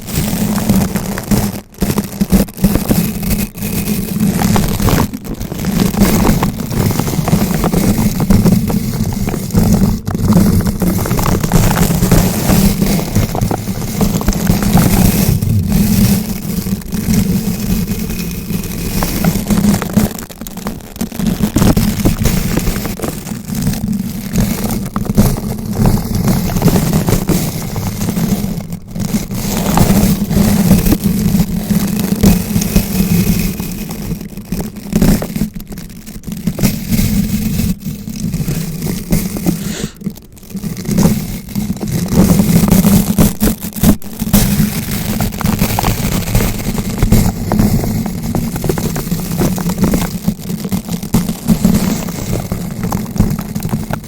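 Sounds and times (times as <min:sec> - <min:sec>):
heavy low rumble: 0:09.9 - 0:20.7.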